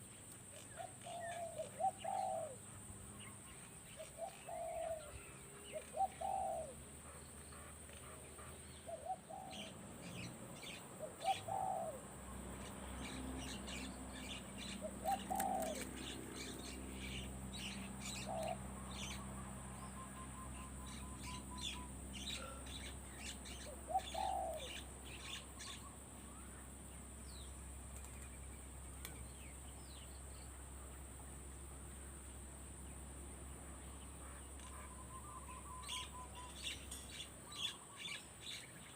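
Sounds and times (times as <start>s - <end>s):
small birds chirping: 0.0s - 31.1s, 31.9s - 38.9s
dove cooing: 0.6s - 2.6s, 4.0s - 6.8s, 8.9s - 12.1s, 13.1s - 19.2s, 19.8s - 25.8s.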